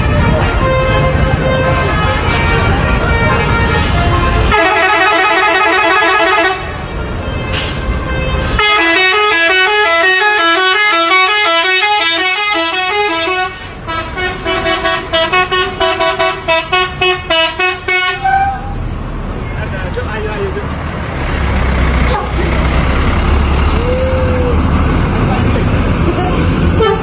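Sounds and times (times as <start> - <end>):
bus multi-tone horn melody: 0.0 - 18.8, 26.1 - 27.0.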